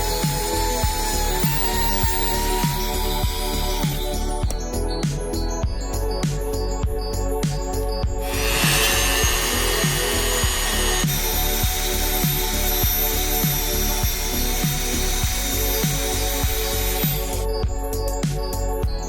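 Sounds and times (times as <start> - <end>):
electronic music with kick drum: 0.0 - 19.0
loud even hiss: 8.2 - 12.7.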